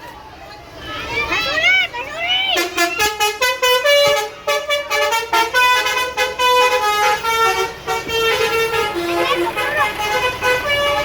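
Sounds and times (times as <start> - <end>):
multi-tone musical horn playing: 2.6 - 11.0.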